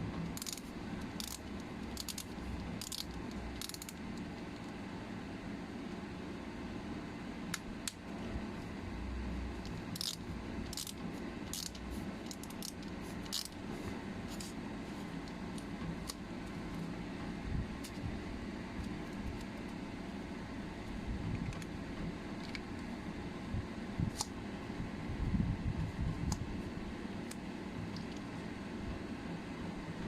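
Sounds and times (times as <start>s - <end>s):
low background rumble: 0.0s - 30.0s.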